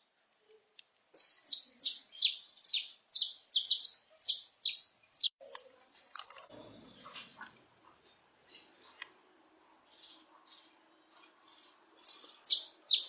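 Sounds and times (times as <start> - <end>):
faint bird chirps: 0.3 - 5.5, 6.5 - 13.0
finch singing: 1.0 - 5.4, 8.4 - 13.0.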